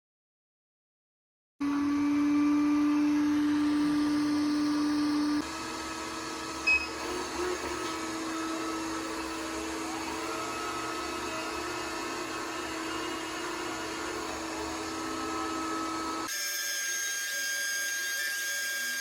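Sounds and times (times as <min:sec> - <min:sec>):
suction fan droning whine: 0:01.6 - 0:16.3
short high beep: 0:06.7 - 0:07.0.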